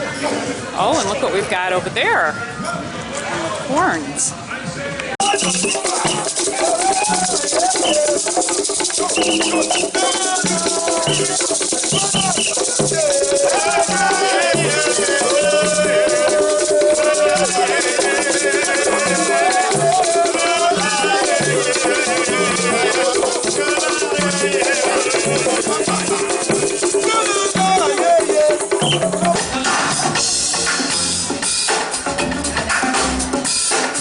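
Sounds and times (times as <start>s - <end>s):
wavering vibrato melody: 5.2s - 27.8s
shakers rattling: 5.2s - 29.0s.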